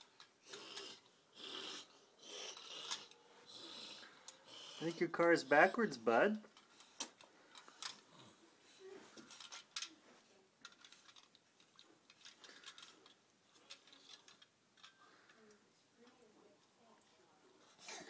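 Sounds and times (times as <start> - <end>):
toy car clicking and tapping: 2.5 - 3.2, 10.6 - 15.0
soft murmurs: 8.1 - 10.9.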